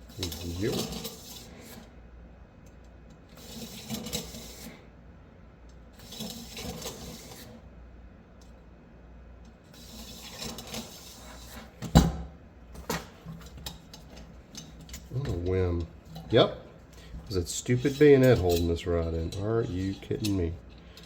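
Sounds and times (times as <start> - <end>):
cleaning rod scraping steel: 0.1 - 1.9, 3.4 - 4.8, 6.0 - 7.6, 9.7 - 11.8, 15.1 - 21.0.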